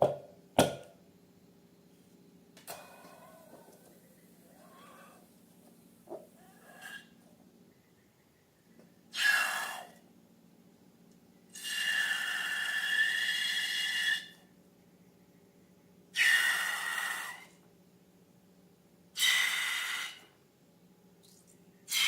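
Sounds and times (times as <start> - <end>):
air hissing with whistling tone: 6.5 - 7.2, 16.2 - 17.5, 19.2 - 20.3.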